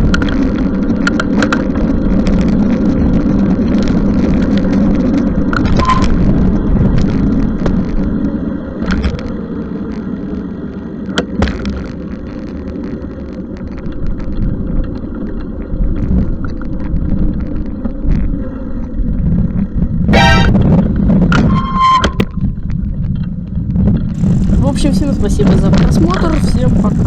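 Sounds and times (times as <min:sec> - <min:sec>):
traffic rumble: 0:24.2 - 0:27.0.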